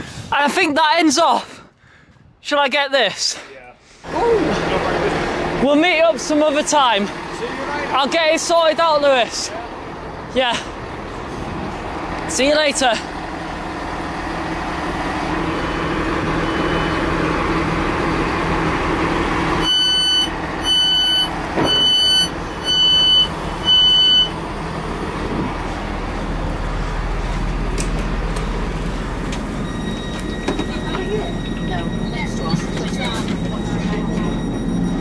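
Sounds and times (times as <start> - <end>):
diesel train engine running: 3.1 - 35.0
train door warning beeps: 16.4 - 17.1, 19.6 - 24.4, 29.2 - 35.0.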